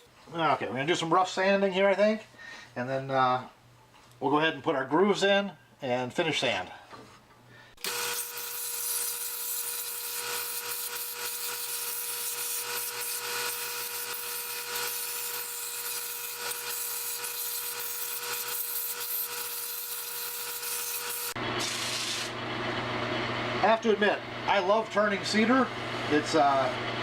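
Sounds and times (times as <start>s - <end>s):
wood lathe whine: 7.8s - 23.6s.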